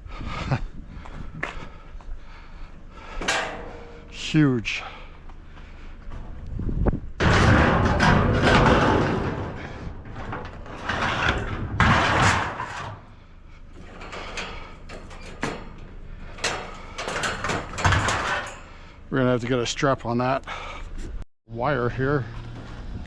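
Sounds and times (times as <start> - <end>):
sheet metal clanking: 3.0 - 4.4, 7.2 - 13.2, 13.8 - 19.0
scrap sheet metal scraping: 7.2 - 13.2, 13.8 - 18.8.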